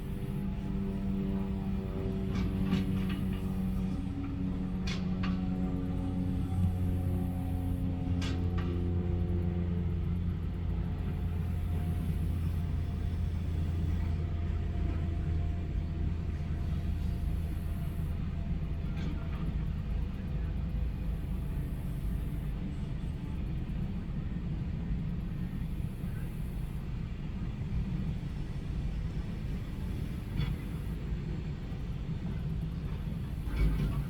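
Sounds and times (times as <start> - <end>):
diesel machinery engine drone: 0.0 - 24.4.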